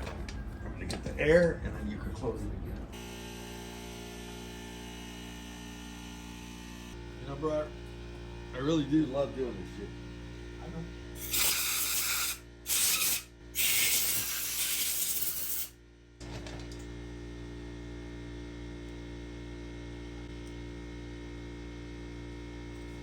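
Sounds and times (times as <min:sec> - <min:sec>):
electrical hum: 0:00.0 - 0:14.6.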